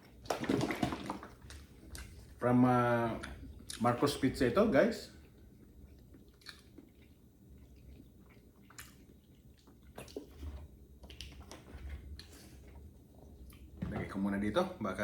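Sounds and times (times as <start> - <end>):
person chewing food: 1.3 - 2.4, 3.2 - 4.0, 5.1 - 13.8
wet mouth smacks: 6.0 - 7.0, 8.3 - 10.4.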